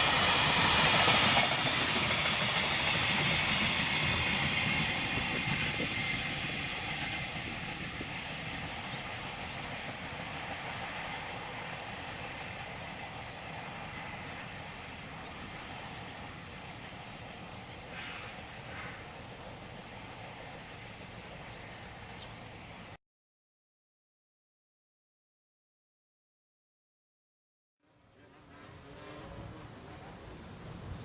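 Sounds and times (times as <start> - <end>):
freight train wagons rolling: 0.0 - 9.7.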